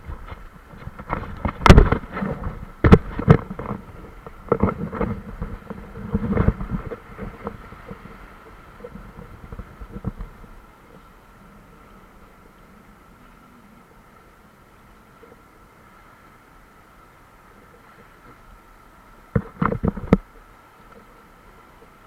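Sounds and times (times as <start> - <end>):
knocks and thumps on raft: 0.0 - 10.5, 19.3 - 20.3
moving water: 0.0 - 22.0
whitewater splashing against raft: 0.0 - 22.0.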